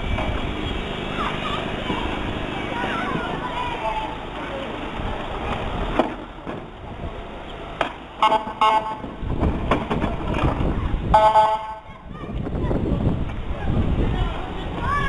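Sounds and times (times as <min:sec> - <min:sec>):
vehicles pulling away rumble: 0:00.0 - 0:15.0
vehicle horn honks: 0:08.2 - 0:09.1, 0:11.1 - 0:11.9.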